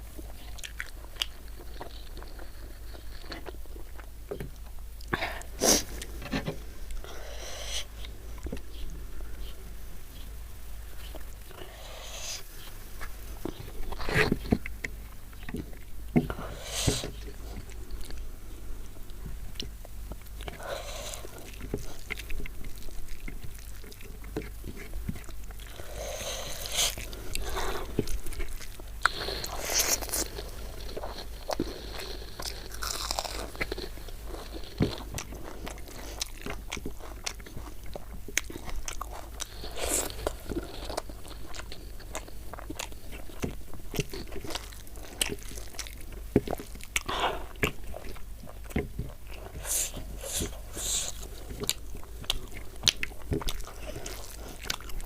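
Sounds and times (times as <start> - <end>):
person chewing food: 0.0 - 55.0
crunching bites: 23.2 - 55.0.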